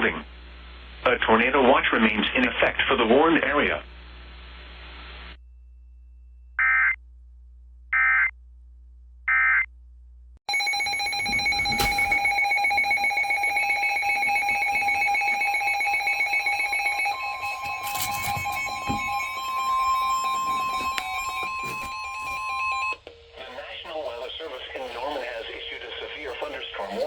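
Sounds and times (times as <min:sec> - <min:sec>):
electronic alert tones: 0:10.5 - 0:23.0.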